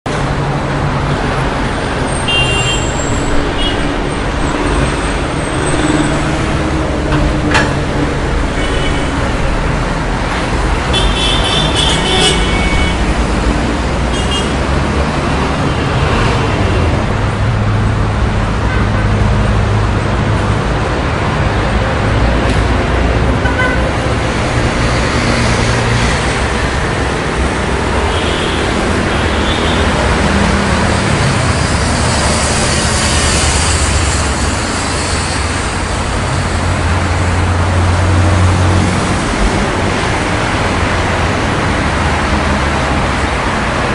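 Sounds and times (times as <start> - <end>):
cars and buses passing: 0.0 - 43.9.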